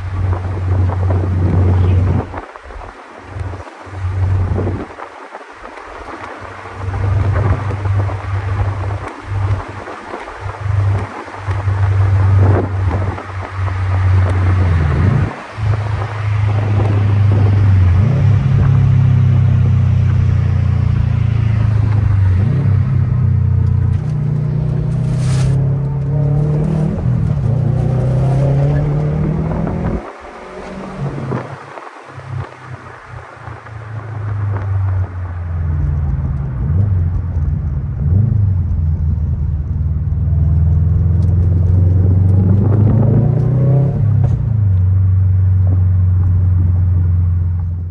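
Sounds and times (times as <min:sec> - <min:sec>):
car engine exhaust drone: 0:00.0 - 0:47.9
car engine droning from inside: 0:10.4 - 0:31.6.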